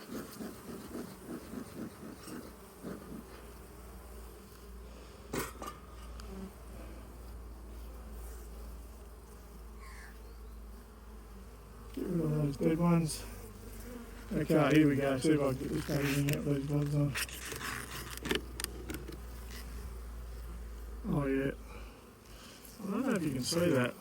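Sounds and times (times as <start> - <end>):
honeybees buzzing: 0.0 - 24.0.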